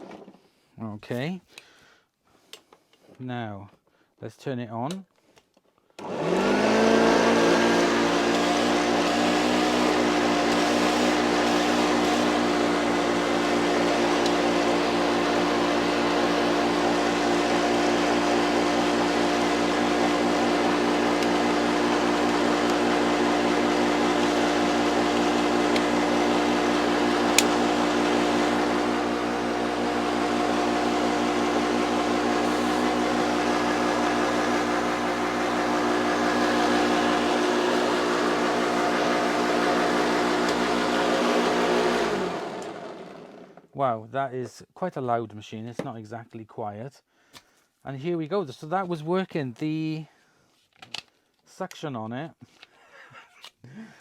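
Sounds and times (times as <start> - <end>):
vacuum cleaner motor whining: 6.0 - 43.7.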